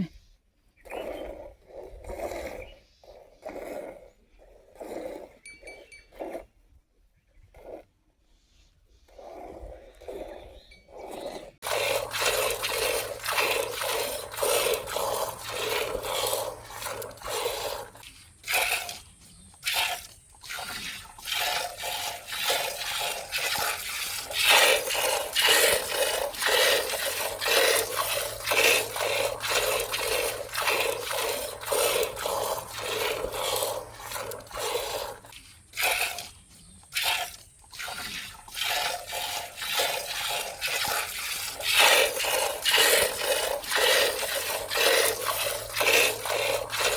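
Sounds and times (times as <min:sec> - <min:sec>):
milk squirting into pail: 0:11.1 - 0:46.9.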